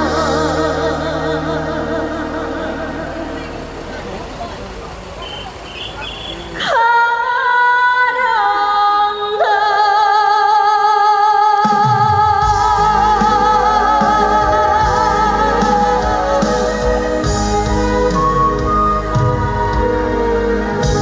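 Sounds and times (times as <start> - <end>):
woman singing with vibrato: 0.0 - 4.2, 6.6 - 21.0
band bass and drums: 0.0 - 4.5, 11.7 - 21.0.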